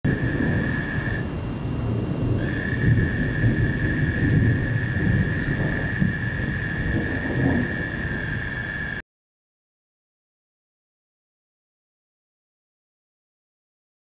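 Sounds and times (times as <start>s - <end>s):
high-pitched whine: 0.0s - 9.0s
thunder rumbling: 0.0s - 9.0s.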